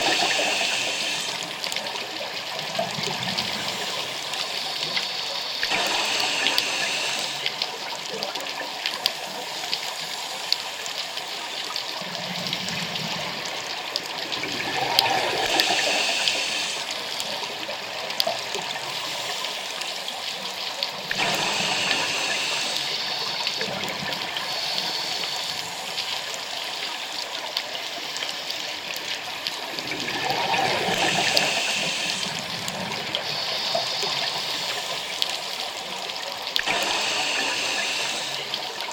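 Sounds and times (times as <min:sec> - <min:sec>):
regulator hiss: 0:00.0 - 0:02.2, 0:03.2 - 0:08.4, 0:14.4 - 0:38.9
exhaled bubbles underwater: 0:12.0 - 0:19.2, 0:20.9 - 0:25.9, 0:29.2 - 0:35.1.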